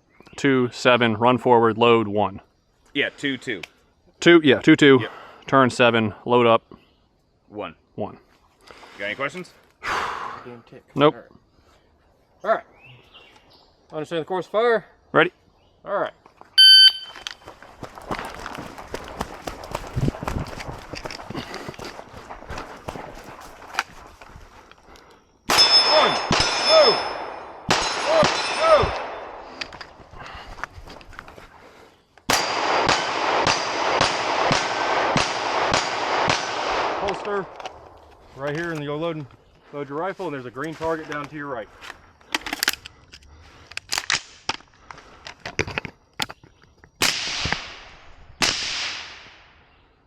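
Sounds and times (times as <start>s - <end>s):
steel target ringing: 16.6s - 17.2s, 25.5s - 29.2s
rifle loading clicks: 16.6s - 17.4s, 23.5s - 24.8s, 29.6s - 30.0s, 41.1s - 46.4s
gunshots: 25.5s - 29.6s, 32.3s - 37.6s
rifle shots with echo: 25.5s - 29.6s, 32.3s - 37.9s.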